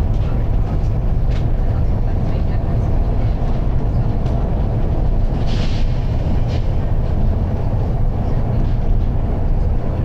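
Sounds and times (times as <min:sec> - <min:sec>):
bus diesel engine rumble: 0:00.0 - 0:10.0
short air hisses: 0:05.4 - 0:06.0.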